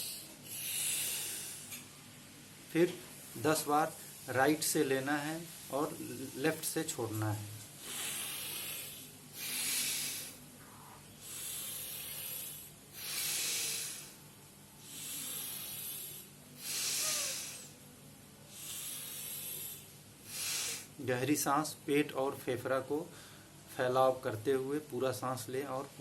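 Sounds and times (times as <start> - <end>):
forceful nasal breathing: 0.0 - 1.8, 7.8 - 14.2, 14.8 - 17.8, 18.5 - 21.0.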